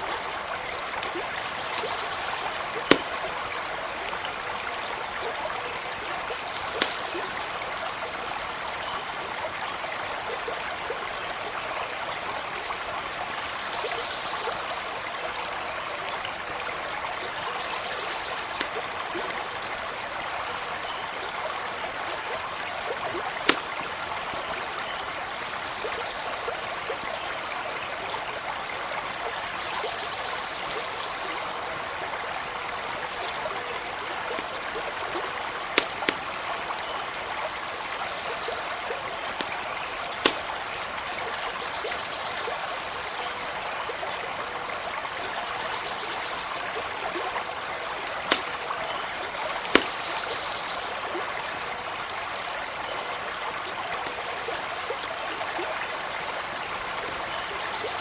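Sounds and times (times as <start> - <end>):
stream running over stones: 0.0 - 58.0
campfire crackling pops: 0.8 - 7.4, 15.3 - 15.6, 23.2 - 24.1, 33.0 - 37.5, 38.1 - 41.5, 48.0 - 50.6, 51.7 - 53.3.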